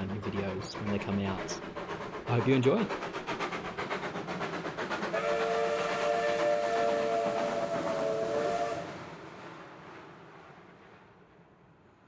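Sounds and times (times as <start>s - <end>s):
steam locomotive exhaust beating: 0.0s - 9.2s.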